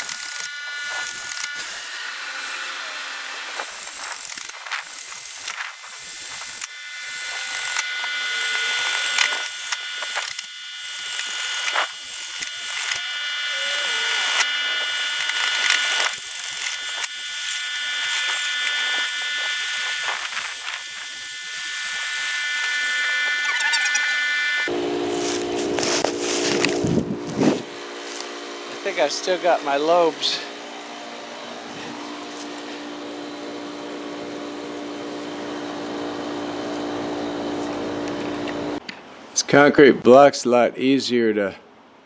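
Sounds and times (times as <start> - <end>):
drill bit knocking: 0.0 - 24.7
power drill boring into brick: 0.0 - 24.7.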